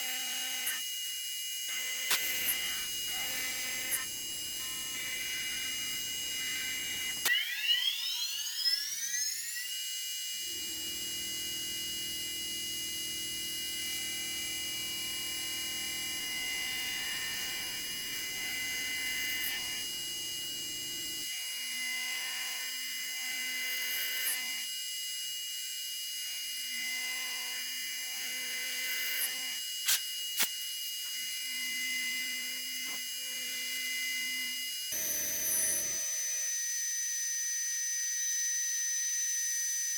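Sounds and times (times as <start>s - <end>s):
end mill cutting metal: 2.0s - 7.3s, 13.8s - 21.2s
milling spindle whining: 2.1s - 7.3s, 10.6s - 21.3s.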